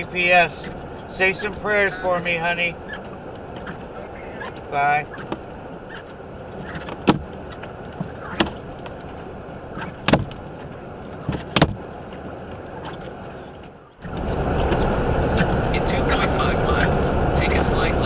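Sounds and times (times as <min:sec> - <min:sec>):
car road and cabin noise: 0:00.0 - 0:18.0
sharp knocks: 0:09.9 - 0:10.4, 0:11.2 - 0:11.8.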